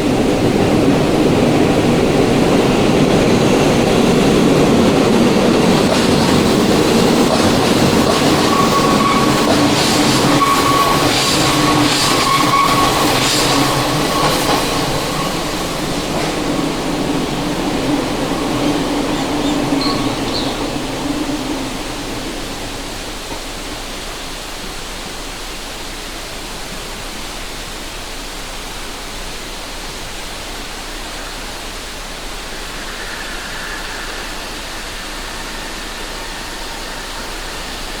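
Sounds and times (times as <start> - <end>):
train passing rumble: 0.0 - 25.4, 29.9 - 38.0
thin squealing tones: 7.2 - 15.9, 31.4 - 38.0.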